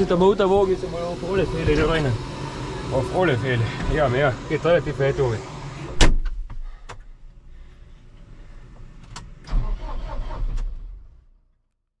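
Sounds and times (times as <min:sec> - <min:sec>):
vehicle engine starting and running: 0:00.0 - 0:11.5.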